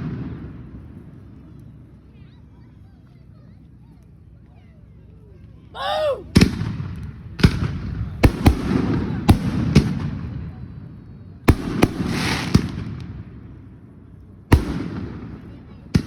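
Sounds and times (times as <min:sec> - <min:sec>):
fireworks rumble and crackle: 0:00.0 - 0:16.0
fireworks bangs: 0:06.4 - 0:10.5, 0:11.5 - 0:13.2.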